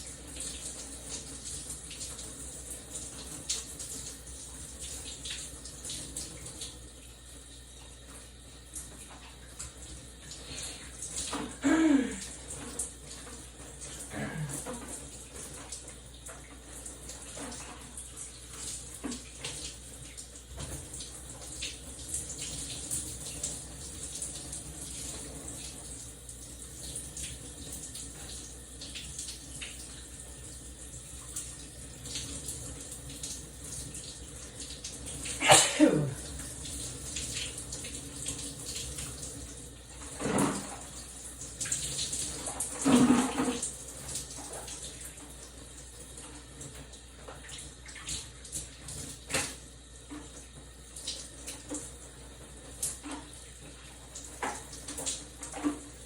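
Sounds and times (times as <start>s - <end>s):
shower water running: 0.0s - 56.0s
person sneezing: 11.5s - 12.3s, 14.1s - 14.7s, 35.4s - 36.2s.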